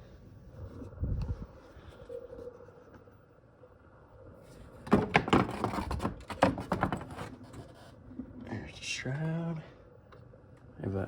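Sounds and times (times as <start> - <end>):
plastic shroud knocking and scraping: 4.8 - 7.4.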